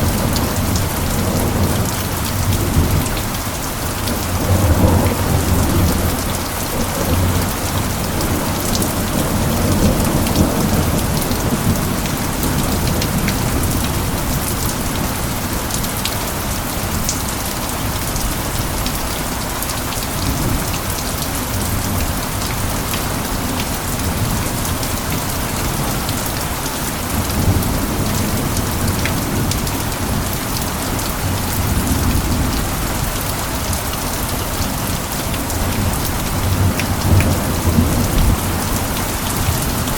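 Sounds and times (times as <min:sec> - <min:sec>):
heavy rain falling: 0:00.0 - 0:39.9
thunder rolling: 0:36.4 - 0:39.9.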